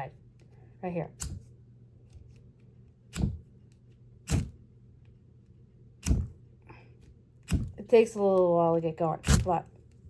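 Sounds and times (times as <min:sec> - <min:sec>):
fire striker scraping: 0:04.2 - 0:04.6, 0:09.2 - 0:09.6.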